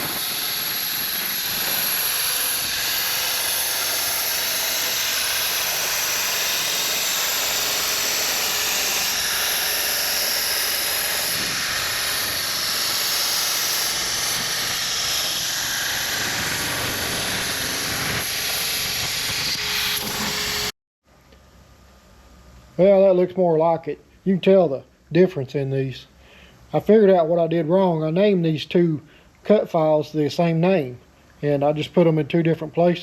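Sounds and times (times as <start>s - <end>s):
cutting torch hissing: 0.0s - 20.7s.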